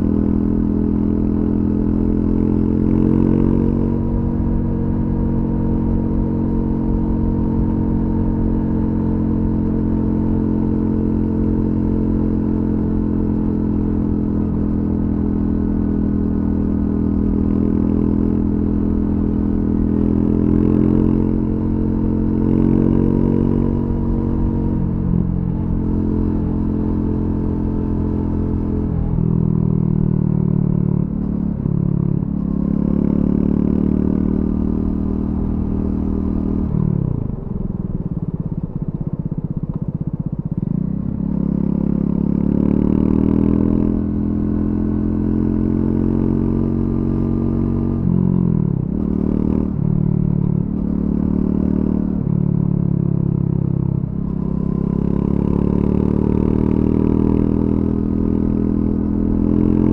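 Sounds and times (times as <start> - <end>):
motorcycle engine cruising: 0.0 - 59.9.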